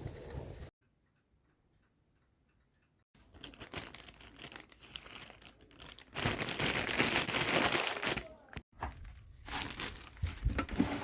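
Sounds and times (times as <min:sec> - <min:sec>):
crinkling and rustling: 0:03.2 - 0:11.0.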